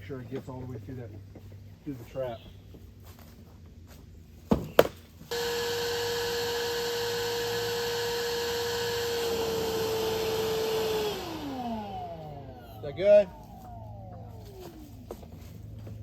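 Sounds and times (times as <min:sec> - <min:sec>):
motor winding down: 0:05.3 - 0:15.6
shop vacuum whining: 0:05.3 - 0:16.0.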